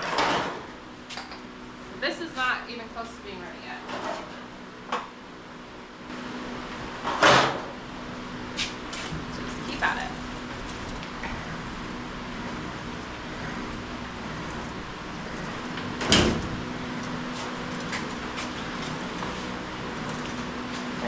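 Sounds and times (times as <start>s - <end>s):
low hum: 4.7s - 21.0s.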